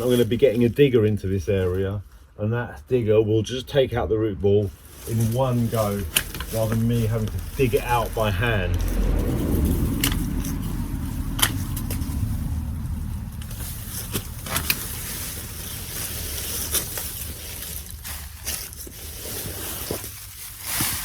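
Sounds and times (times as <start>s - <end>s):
rustle of leafy branches: 0.0s - 2.3s, 4.5s - 21.0s
steady low rumble: 2.8s - 21.0s
loppers snipping branches: 5.2s - 15.1s.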